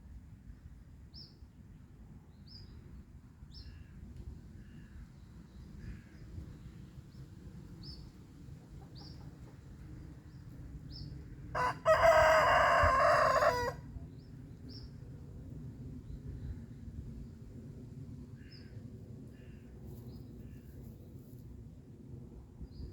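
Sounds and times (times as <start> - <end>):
rooster crowing: 11.6 - 13.9.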